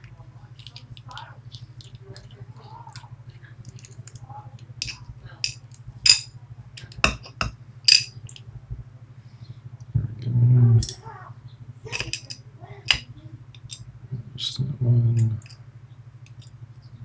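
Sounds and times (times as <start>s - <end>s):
low electrical hum: 0.0s - 17.0s
metal lock parts clicking: 0.6s - 1.9s, 4.8s - 8.4s, 11.9s - 13.8s, 15.2s - 15.6s, 16.3s - 16.5s.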